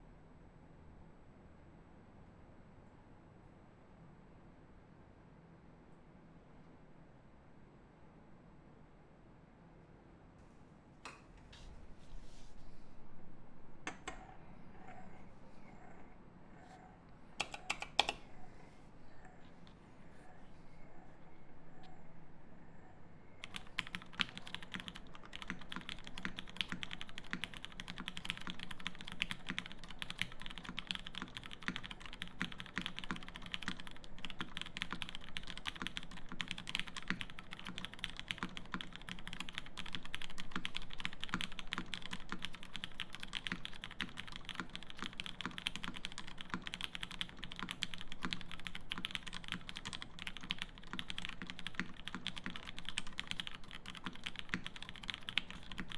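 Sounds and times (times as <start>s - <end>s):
fast typing on mechanical keyboard: 17.4s - 18.4s, 23.4s - 55.9s.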